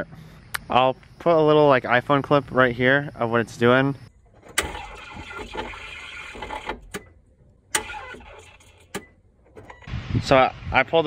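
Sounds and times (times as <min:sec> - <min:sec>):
car starter noise: 0:04.1 - 0:10.0
car starter click: 0:04.3 - 0:09.9.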